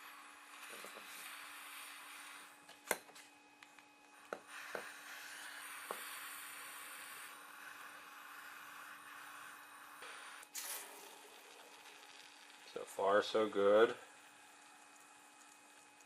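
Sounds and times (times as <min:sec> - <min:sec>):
faint steady hiss: 0:03.6 - 0:16.0.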